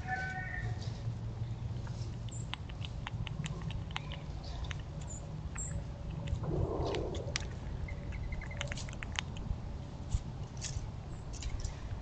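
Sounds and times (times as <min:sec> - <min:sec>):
steady low rumble: 0:00.6 - 0:12.0
squirrel gnawing a nut: 0:01.8 - 0:09.6.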